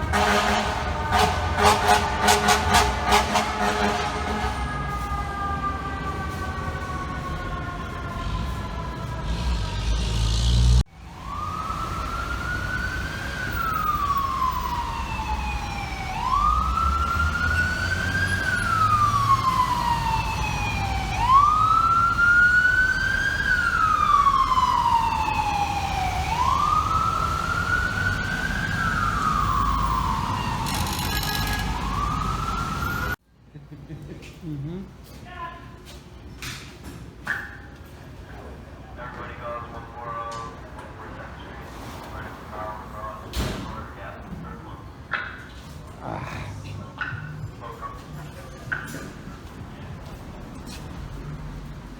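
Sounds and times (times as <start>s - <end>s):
fire truck siren wailing: 0.0s - 33.2s
engine and traffic rumble: 0.0s - 51.9s.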